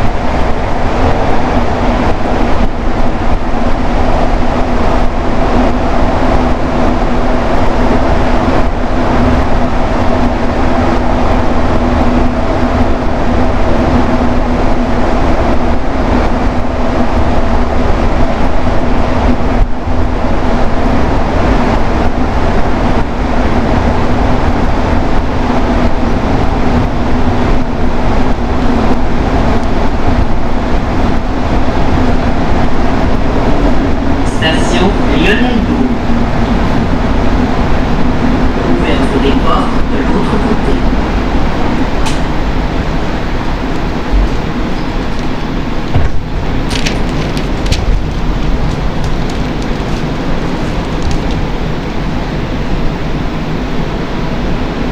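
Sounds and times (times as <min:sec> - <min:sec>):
metro train rumbling: 0:00.0 - 0:54.9
steady train hum: 0:00.0 - 0:54.9.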